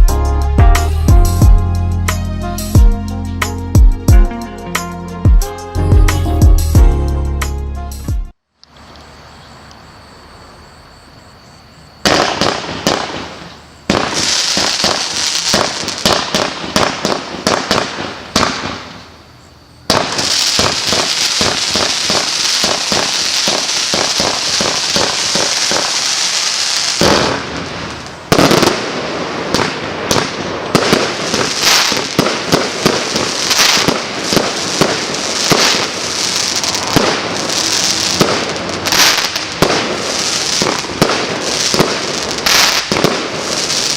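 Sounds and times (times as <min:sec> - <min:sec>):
dense firework crackling: 0:12.0 - 0:19.2, 0:19.9 - 0:43.9
firework volleys of shots: 0:12.0 - 0:19.2, 0:19.9 - 0:43.9.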